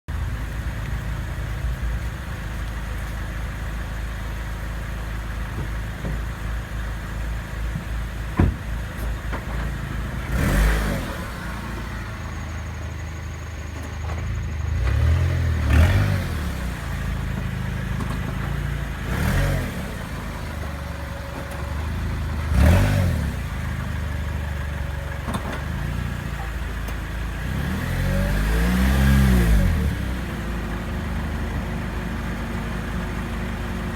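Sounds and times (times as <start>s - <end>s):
car engine revving: 9.3s - 13.5s, 14.5s - 24.2s, 27.3s - 31.0s.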